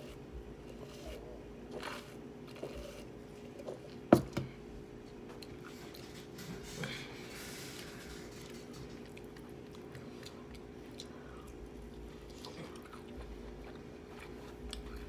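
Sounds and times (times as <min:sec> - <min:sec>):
person chewing: 0:07.7 - 0:15.0.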